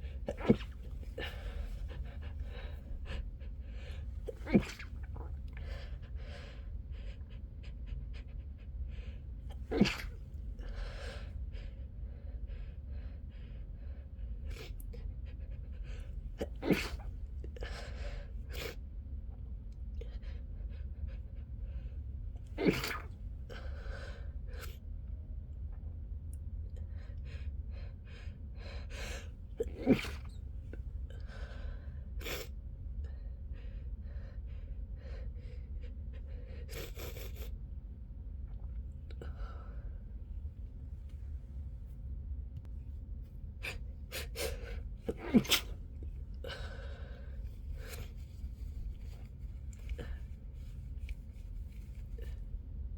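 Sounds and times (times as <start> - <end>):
breathing: 0.0 - 7.3, 10.1 - 14.3, 31.2 - 32.1, 39.2 - 40.1, 46.4 - 52.5
person sneezing into pillow: 0.3 - 2.0, 4.3 - 5.3, 9.6 - 10.2, 16.4 - 17.1, 22.6 - 23.2, 29.7 - 30.4, 45.1 - 45.8.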